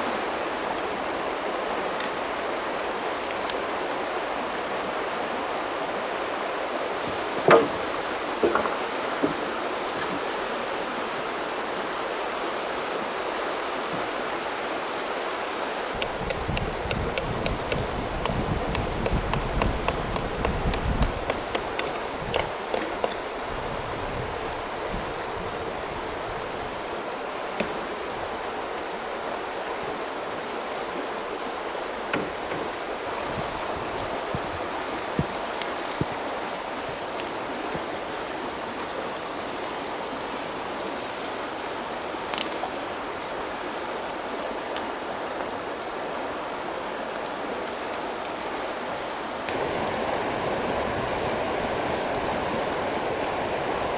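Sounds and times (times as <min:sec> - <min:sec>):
river flowing: 0:00.0 - 0:53.9.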